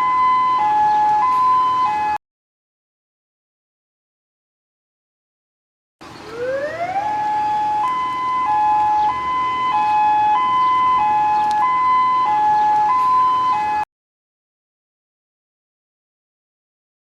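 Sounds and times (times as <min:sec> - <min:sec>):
hi-lo alarm tone: 0:00.0 - 0:02.2, 0:06.4 - 0:13.8.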